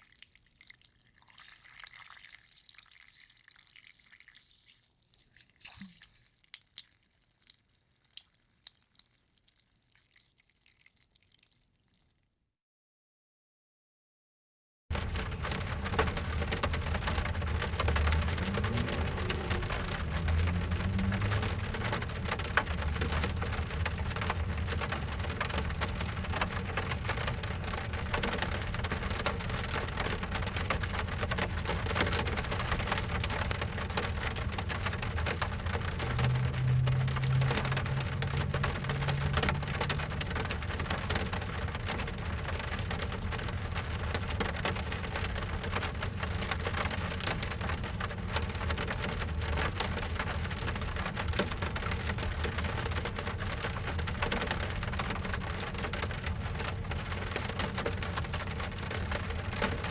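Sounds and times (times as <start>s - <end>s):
steady rain patter: 0.0s - 11.5s, 14.9s - 59.9s
low rumble: 35.4s - 41.8s.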